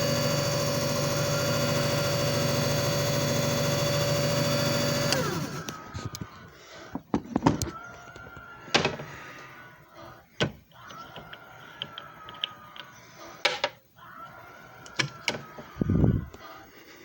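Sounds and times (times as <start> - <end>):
machine whine: 0.0 - 6.5.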